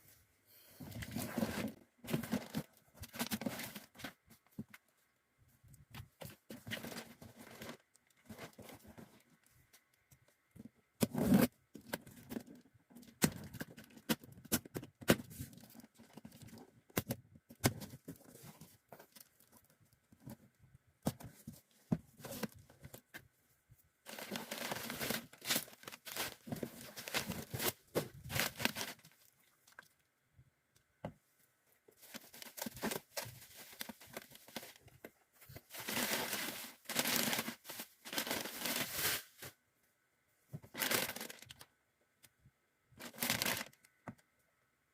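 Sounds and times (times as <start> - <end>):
packaging crinkling and rustling: 24.1 - 29.9, 31.9 - 39.6, 40.7 - 41.7, 43.0 - 43.9
packaging tearing: 43.0 - 43.8.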